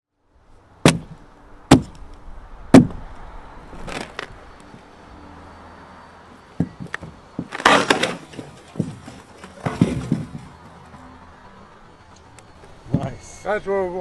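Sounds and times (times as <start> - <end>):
carving tool chopping wood: 0.8 - 2.0, 2.7 - 3.0
soft knocks: 6.6 - 7.5
tool scraping wood: 6.6 - 10.6.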